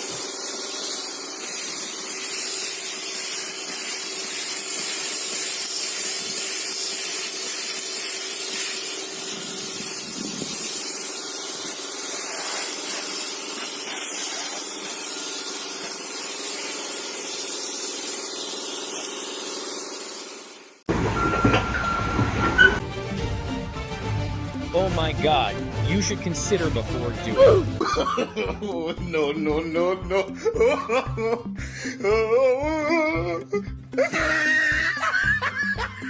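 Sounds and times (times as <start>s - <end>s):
hissing spray: 0.0s - 20.9s.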